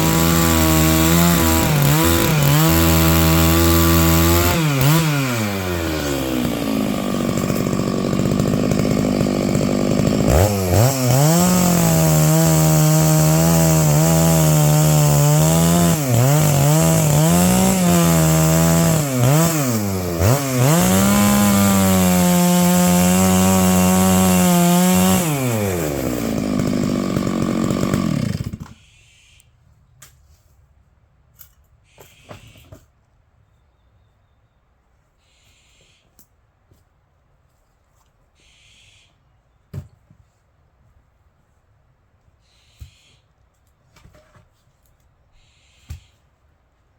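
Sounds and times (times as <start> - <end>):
chainsaw cutting wood: 0.0 - 28.8.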